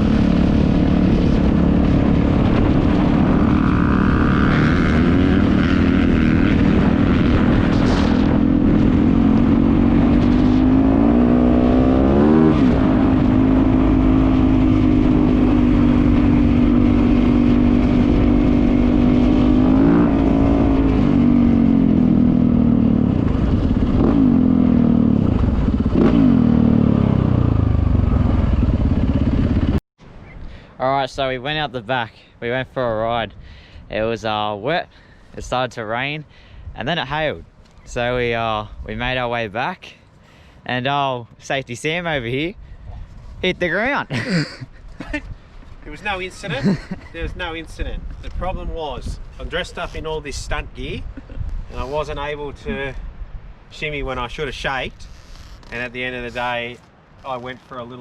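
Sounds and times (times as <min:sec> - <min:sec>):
dirt bike engine: 0:00.0 - 0:29.8, 0:44.1 - 0:53.0.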